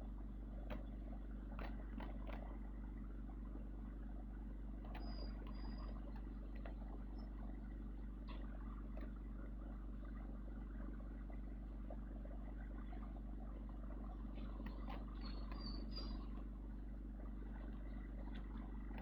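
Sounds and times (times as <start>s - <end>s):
light clicks: 0.6s - 2.6s, 4.8s - 7.3s, 14.4s - 16.5s.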